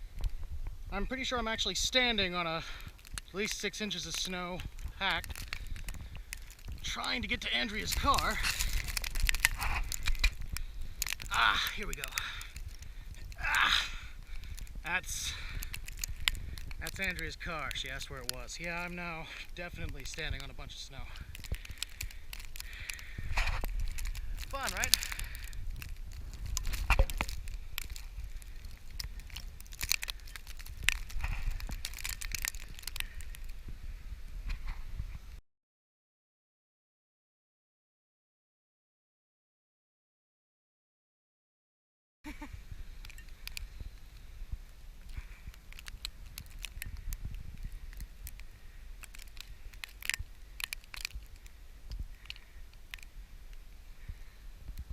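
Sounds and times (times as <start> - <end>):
steady low rumble: 0.0 - 35.4
snow crunching underfoot: 1.0 - 33.6
footsteps crunching through snow: 3.3 - 12.6.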